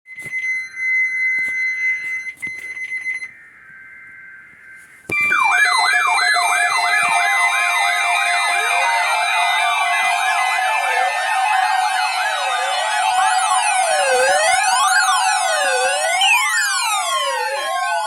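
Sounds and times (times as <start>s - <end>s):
electronic siren alarm: 0.2s - 18.0s
steady high electronic tones: 3.1s - 18.0s.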